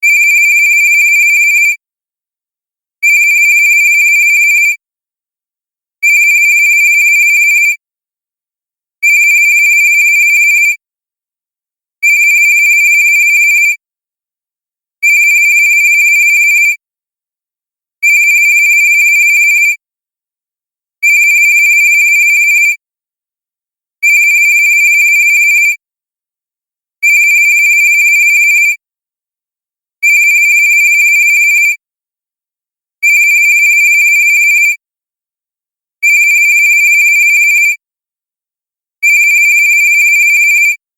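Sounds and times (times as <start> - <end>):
cell phone ringtone: 0.2 - 1.8.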